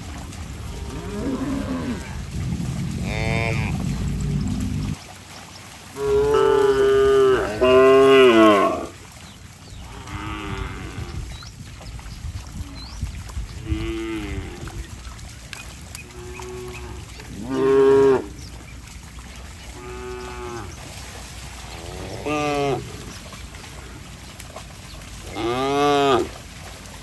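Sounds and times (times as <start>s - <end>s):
cattle mooing: 0.7s - 5.0s, 6.0s - 9.0s, 13.6s - 14.8s, 16.1s - 18.4s, 19.8s - 20.7s, 21.8s - 23.0s, 25.3s - 26.3s.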